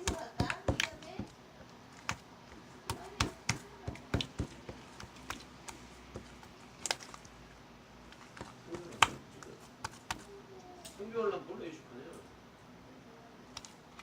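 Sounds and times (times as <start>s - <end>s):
slime squished by hand: 0.1s - 7.5s
sticky pops: 8.4s - 10.3s.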